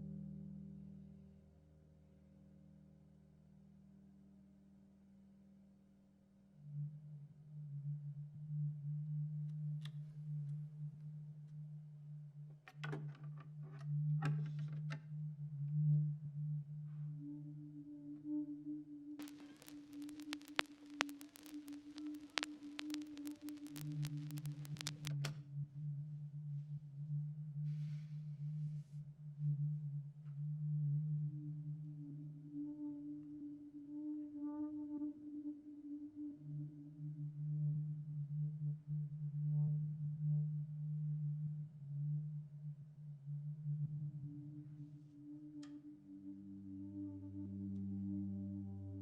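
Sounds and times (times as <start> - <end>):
clicks and rustles: 19.2 - 25.3
soft hiss: 19.2 - 25.3.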